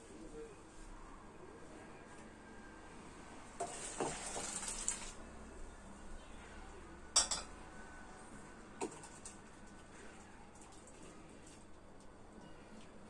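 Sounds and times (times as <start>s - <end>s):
dishware clink: 7.2s - 7.5s.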